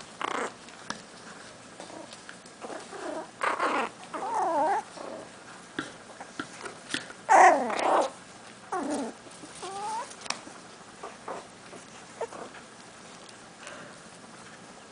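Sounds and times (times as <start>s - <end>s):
puppies whining and yelping: 2.7s - 5.3s, 7.3s - 10.2s, 11.0s - 12.6s.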